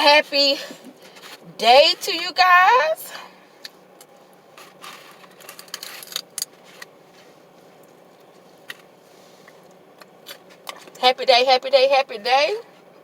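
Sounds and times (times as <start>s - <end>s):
chewing and handling food: 3.6s - 11.0s.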